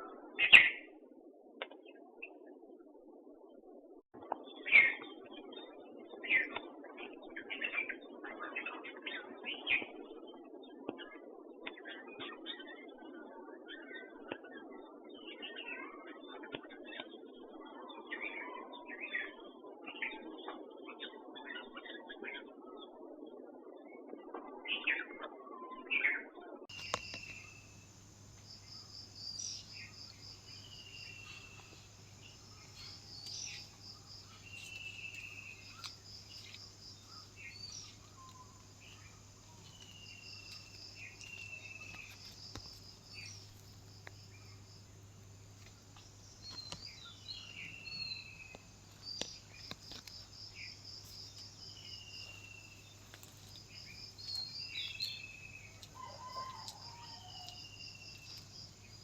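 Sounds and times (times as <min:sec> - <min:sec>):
bird trills: 0:26.7 - 0:43.6, 0:53.7 - 0:58.4
bird chirps: 0:26.7 - 0:59.0
faint low hum: 0:26.7 - 0:59.0.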